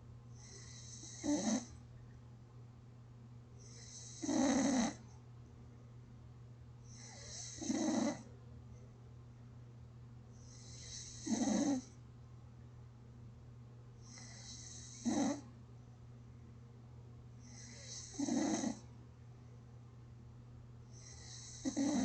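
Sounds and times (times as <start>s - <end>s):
steady low hum: 0.0s - 22.0s
person snoring: 0.4s - 1.7s, 3.7s - 5.0s, 6.9s - 8.2s, 10.5s - 11.9s, 14.1s - 15.4s, 17.5s - 18.8s, 21.0s - 22.0s.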